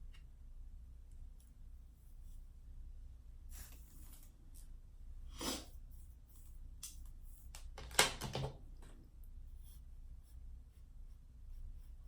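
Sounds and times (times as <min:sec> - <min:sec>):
faint low hum: 0:00.0 - 0:07.8, 0:08.5 - 0:12.0
rustling and handling noises: 0:03.5 - 0:04.7.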